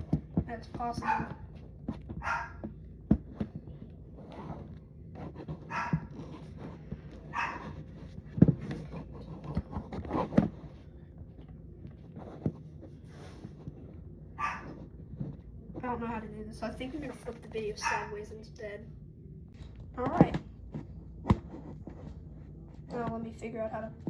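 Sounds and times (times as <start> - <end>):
dog barking: 1.0 - 1.4, 2.2 - 2.7, 5.6 - 6.2, 7.3 - 7.8, 14.4 - 14.8, 17.8 - 18.2.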